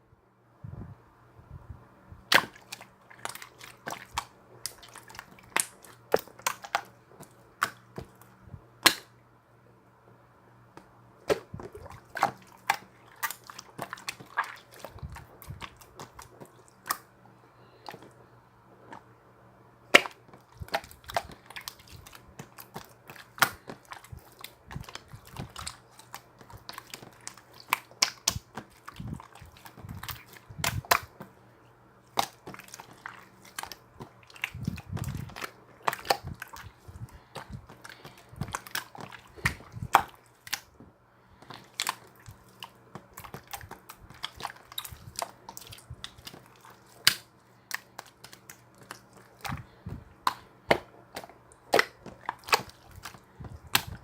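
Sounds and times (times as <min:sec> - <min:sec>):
slime clicking and popping: 0:19.9 - 0:31.1.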